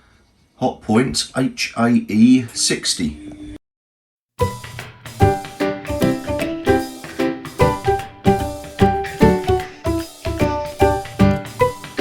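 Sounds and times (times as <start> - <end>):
keyboard music with beat: 4.4 - 12.0.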